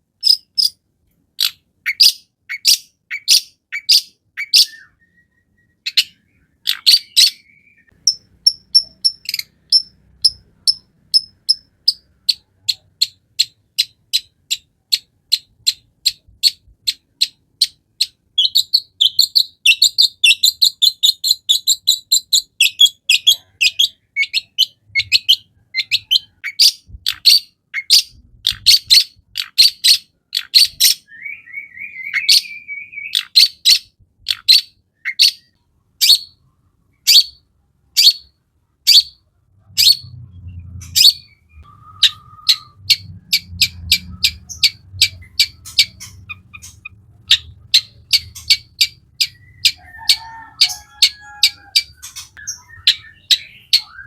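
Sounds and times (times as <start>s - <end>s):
shrike chattering song: 5.6s - 31.1s, 39.8s - 54.0s
low rumble: 39.5s - 49.8s
buzzy bird phrase: 39.8s - 54.0s.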